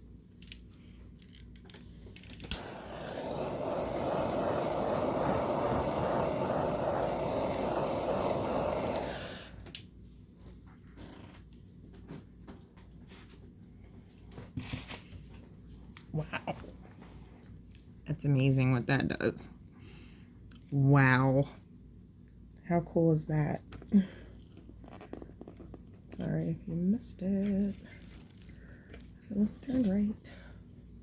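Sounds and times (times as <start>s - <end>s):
torch igniter click: 1.6s - 9.9s
torch flame hissing: 1.8s - 9.8s.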